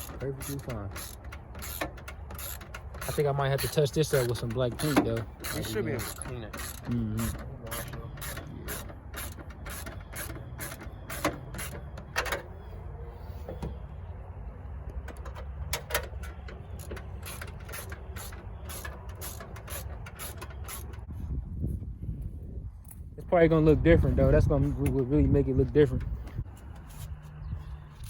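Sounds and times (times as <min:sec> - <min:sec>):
ratchet wrench clicking: 0:00.0 - 0:12.2, 0:15.8 - 0:21.1.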